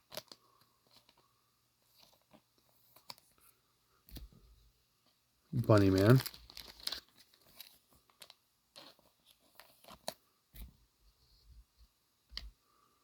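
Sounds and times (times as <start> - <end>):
trading cards clicking and rustling: 5.6 - 9.0.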